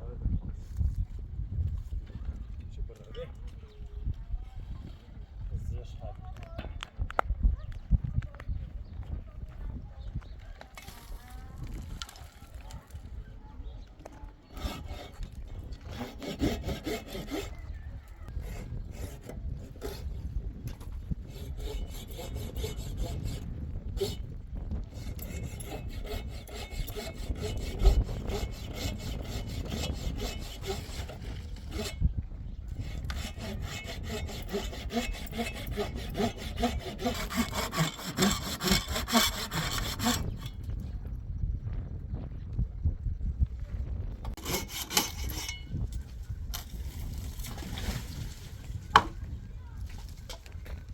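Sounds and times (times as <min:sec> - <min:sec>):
saw cutting through wood: 0:14.5 - 0:17.7, 0:18.3 - 0:20.2, 0:21.1 - 0:24.3, 0:24.9 - 0:32.0, 0:32.7 - 0:40.6, 0:44.4 - 0:45.8.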